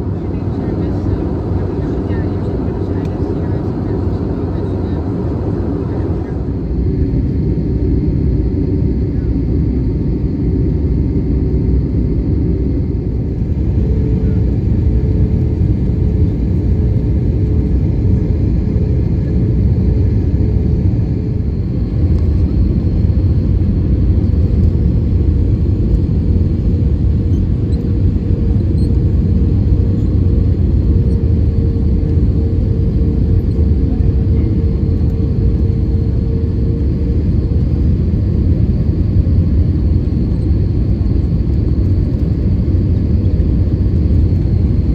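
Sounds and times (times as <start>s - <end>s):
engine and airflow rumble: 0.0s - 44.9s
steady engine whine: 0.0s - 44.9s.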